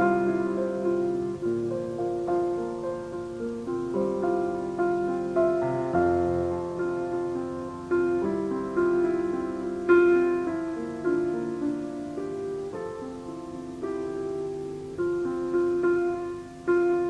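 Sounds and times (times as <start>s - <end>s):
slow piano chords: 0.0s - 17.0s.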